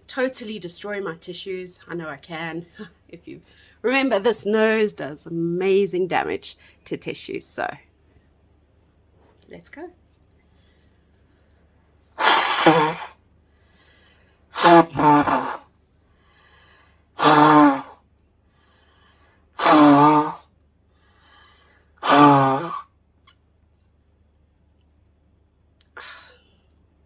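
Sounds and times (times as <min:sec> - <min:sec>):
woman blowing her nose: 0:12.2 - 0:13.2, 0:14.5 - 0:15.7, 0:17.2 - 0:18.0, 0:19.6 - 0:20.5, 0:22.0 - 0:22.9.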